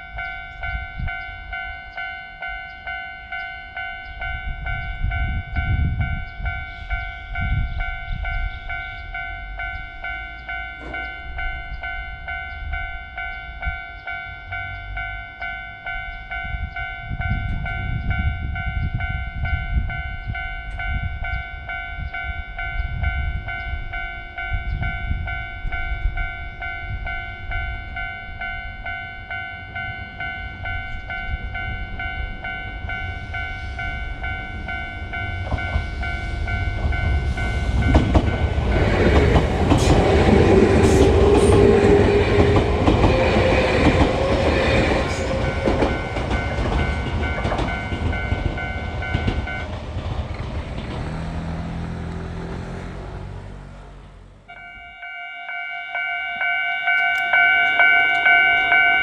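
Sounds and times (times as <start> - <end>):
level-crossing warning bell: 0.0 - 50.1, 54.5 - 59.0
train passing: 0.0 - 59.0
train wheel clatter: 35.2 - 51.5.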